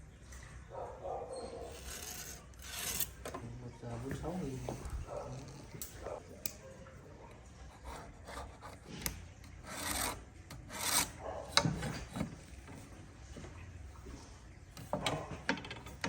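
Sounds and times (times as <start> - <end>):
hand rasping on wood: 1.7 - 3.1, 7.7 - 12.3.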